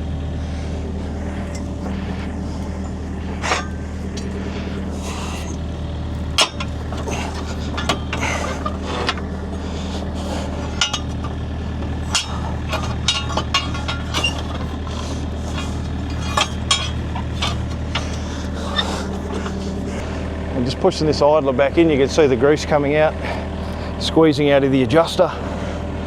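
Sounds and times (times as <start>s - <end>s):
diesel engine idling: 0.0s - 26.0s
crowbar clinking on metal: 6.4s - 9.2s, 9.8s - 19.6s.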